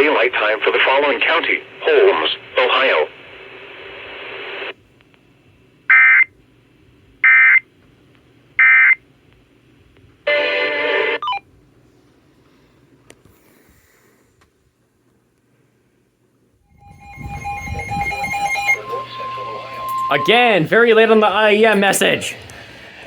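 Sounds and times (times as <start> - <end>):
buzzing data bursts: 16.7 - 21.9.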